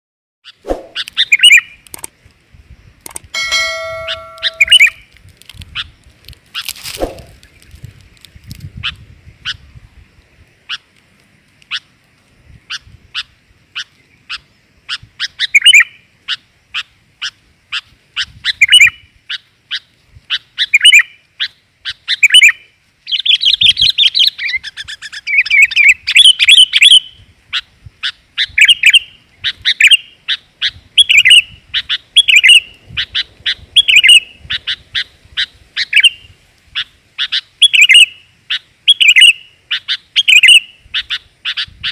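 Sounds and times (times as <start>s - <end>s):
bird chirping and chattering: 3.1s - 5.0s, 36.8s - 41.9s.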